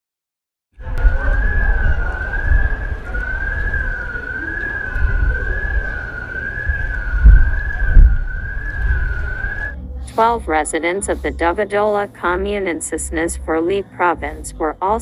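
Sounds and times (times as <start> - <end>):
wavering emergency siren: 0.8 - 9.8
heavy low rumble: 0.8 - 11.6.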